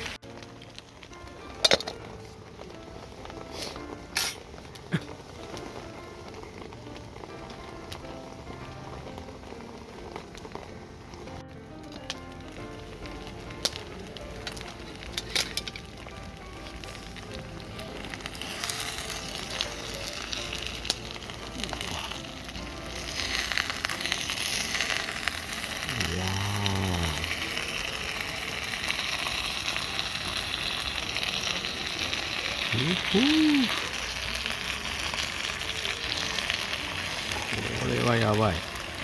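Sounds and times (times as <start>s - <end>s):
dumplings sizzling in a pan: 0.0s - 39.0s
hum-like voiced sound: 25.9s - 27.4s, 32.7s - 33.8s.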